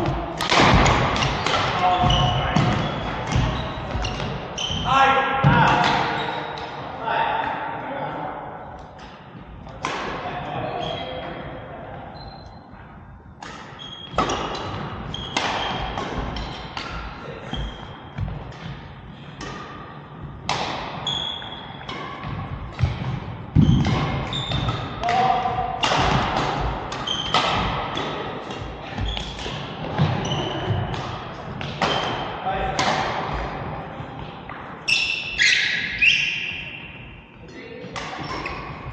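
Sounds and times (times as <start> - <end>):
racket hitting shuttlecock: 0.0 - 4.5, 8.9 - 10.2, 13.4 - 34.7, 37.9 - 38.9.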